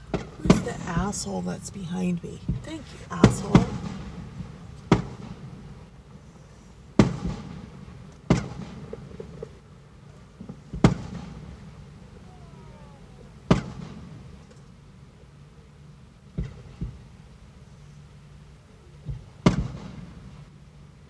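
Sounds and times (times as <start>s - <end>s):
fireworks booming: 0.0s - 9.7s, 10.4s - 14.4s.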